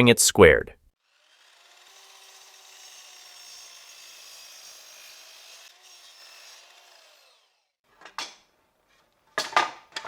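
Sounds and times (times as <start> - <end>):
miter saw cutting wood: 1.0 - 7.8.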